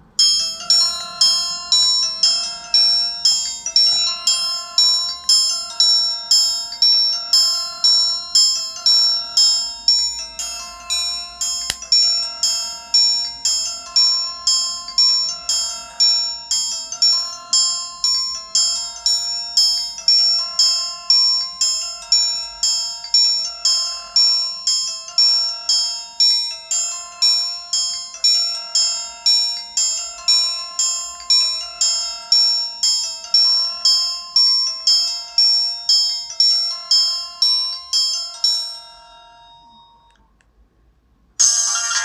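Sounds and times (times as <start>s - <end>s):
mobile phone ringtone melody: 41.4s - 42.0s.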